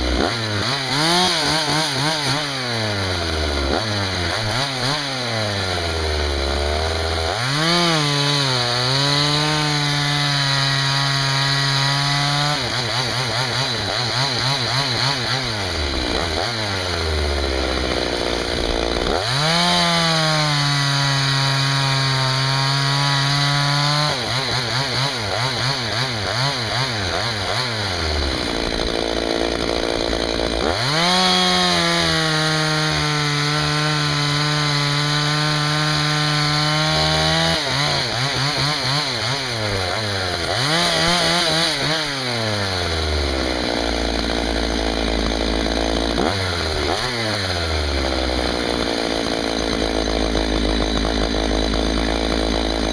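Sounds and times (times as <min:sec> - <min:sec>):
chainsaw revving and cutting wood: 0:00.0 - 0:52.9.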